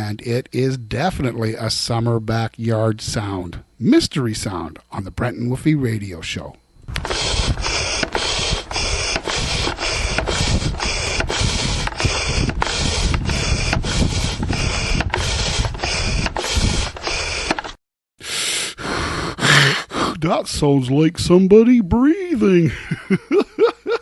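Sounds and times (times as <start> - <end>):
pulsing mechanical air rush: 6.9 - 20.2.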